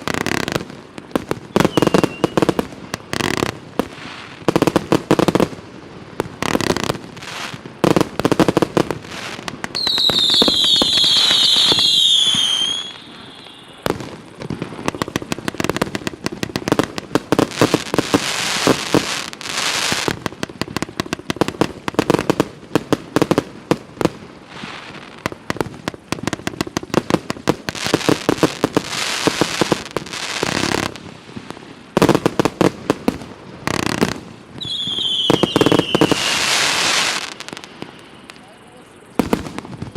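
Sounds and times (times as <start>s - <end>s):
firework pops and crackles: 0.0s - 39.9s
firework whistles falling in pitch: 1.5s - 2.6s, 9.7s - 14.0s, 34.6s - 39.9s.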